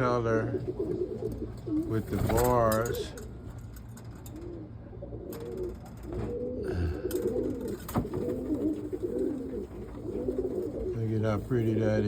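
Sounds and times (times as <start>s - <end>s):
pigeons cooing: 0.0s - 12.0s.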